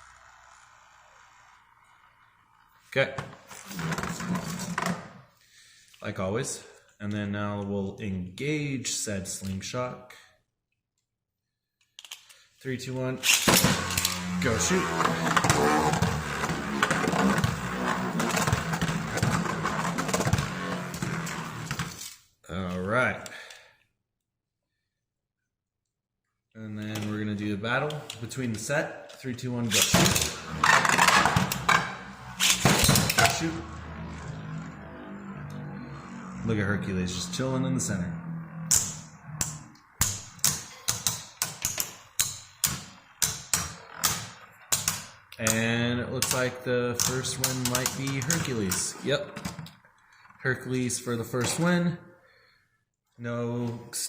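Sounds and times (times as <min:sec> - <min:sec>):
spinning tops whirring: 0:00.0 - 0:02.9, 0:29.8 - 0:44.9.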